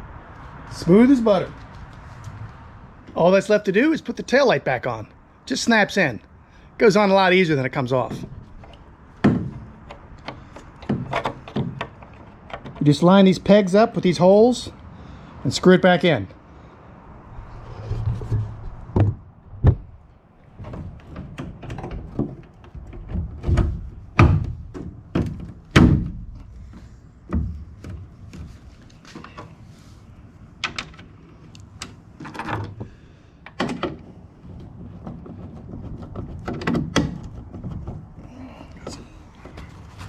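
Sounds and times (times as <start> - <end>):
knocks and clicks of handling: 8.0 - 12.9, 17.9 - 29.6, 30.6 - 40.0
loud thuds: 17.3 - 26.4.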